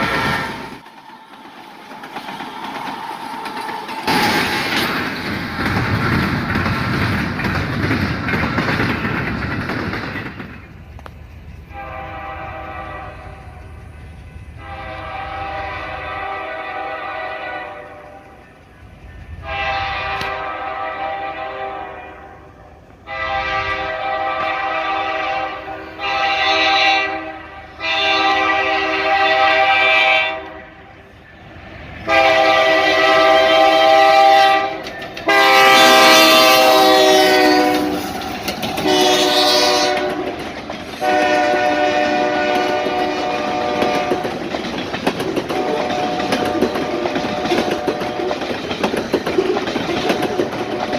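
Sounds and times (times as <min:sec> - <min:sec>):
locomotive air horn blasts: 0:11.7 - 0:13.7, 0:14.6 - 0:18.4, 0:19.4 - 0:30.8, 0:32.0 - 0:38.1, 0:38.8 - 0:40.4, 0:41.0 - 0:44.3, 0:45.5 - 0:48.4.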